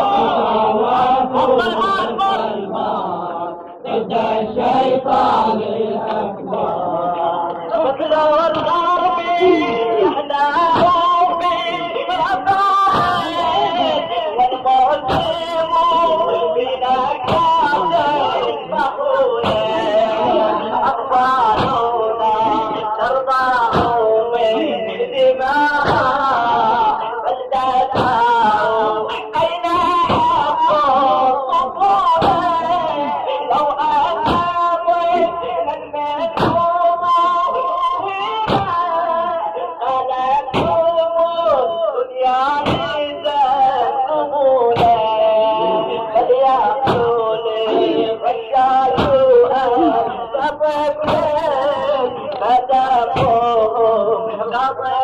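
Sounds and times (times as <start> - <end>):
voices chanting ornamented melody: 0.0 - 10.6
men chanting an anthem: 0.0 - 55.0
heavy beats: 0.1 - 24.7, 25.3 - 44.0, 44.7 - 54.8.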